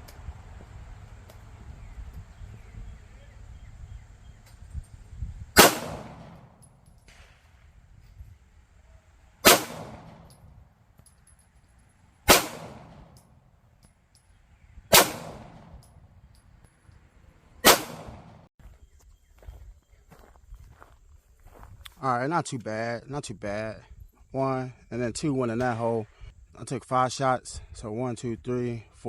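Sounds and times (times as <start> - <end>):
pistol shots: 5.6 - 7.5, 9.4 - 10.5, 12.2 - 13.4, 14.9 - 16.0, 17.6 - 18.5.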